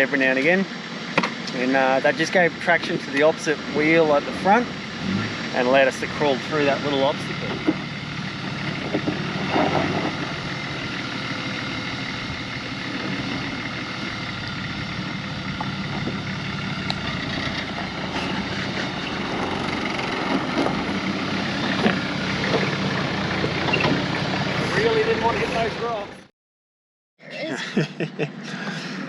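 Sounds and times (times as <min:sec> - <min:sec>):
vehicle engine hum: 0:00.0 - 0:26.3, 0:27.3 - 0:29.0
knocks and rattles: 0:08.6 - 0:10.3.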